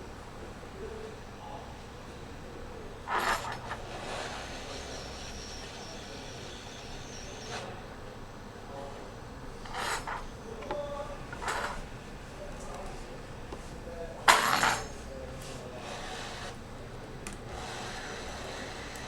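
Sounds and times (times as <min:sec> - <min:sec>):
hand tools scraping and rubbing: 0:03.1 - 0:07.8, 0:09.6 - 0:11.9, 0:14.3 - 0:16.6.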